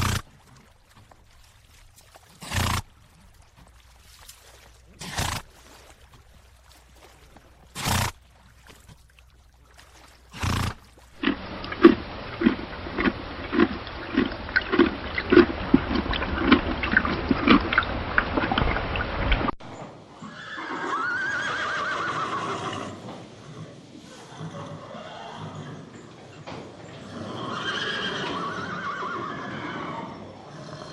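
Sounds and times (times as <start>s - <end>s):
horse blowing: 0.0s - 0.3s, 2.3s - 3.0s, 4.9s - 5.6s, 7.7s - 8.2s, 10.3s - 17.9s
horse whinnying: 20.2s - 23.0s, 24.2s - 25.9s, 27.0s - 30.9s.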